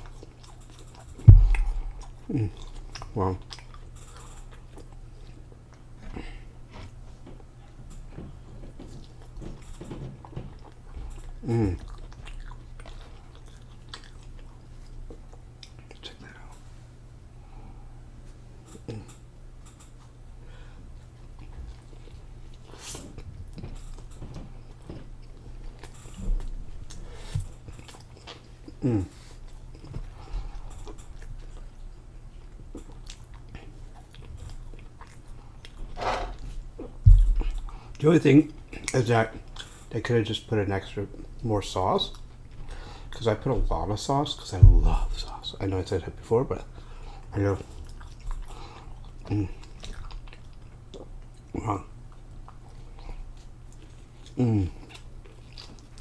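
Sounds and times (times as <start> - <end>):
chewing and biting food: 0.0 - 16.7, 18.6 - 56.0
person murmuring mm: 1.3 - 3.4, 11.4 - 11.9, 28.8 - 29.3, 54.4 - 54.9.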